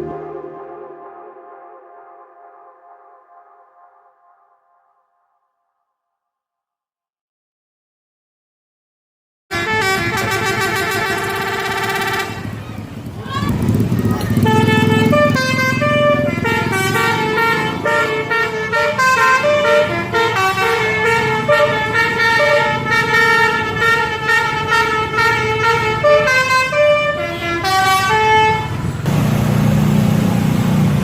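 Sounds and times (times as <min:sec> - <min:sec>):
musical air horn tune: 0:00.0 - 0:04.4, 0:09.5 - 0:12.6, 0:14.4 - 0:28.9
low rumble: 0:00.0 - 0:05.2.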